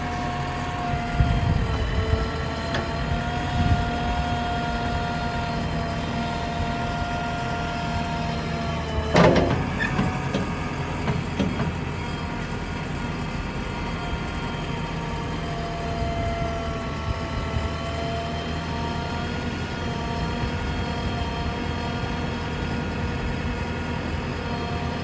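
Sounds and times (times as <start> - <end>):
diesel engine running: 0.0 - 25.0
loud metal clank: 9.1 - 10.0.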